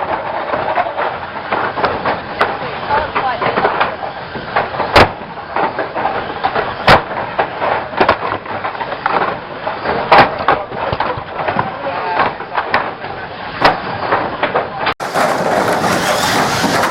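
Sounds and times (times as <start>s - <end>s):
racing cars running: 15.0s - 16.9s.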